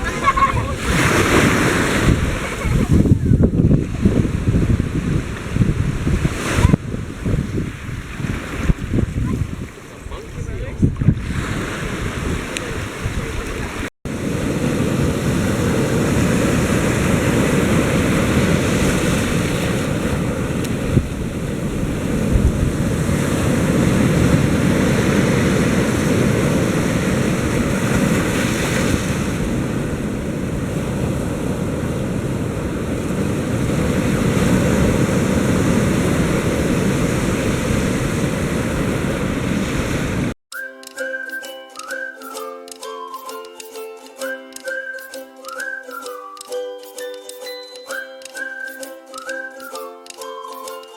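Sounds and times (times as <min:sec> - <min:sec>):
ocean surf: 0:00.0 - 0:40.4
wind buffeting microphone: 0:00.0 - 0:40.4.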